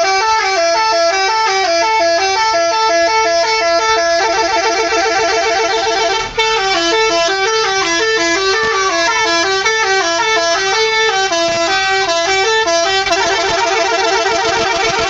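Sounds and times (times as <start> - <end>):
multi-tone musical horn melody: 0.0 - 15.0.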